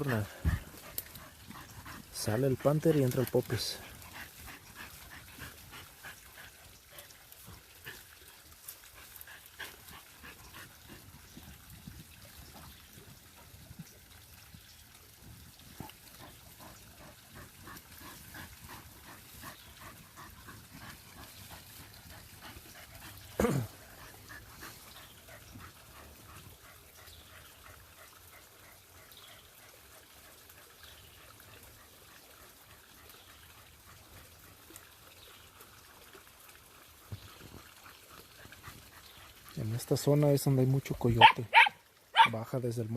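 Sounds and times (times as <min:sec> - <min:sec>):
dog barking: 0:41.1 - 0:42.4.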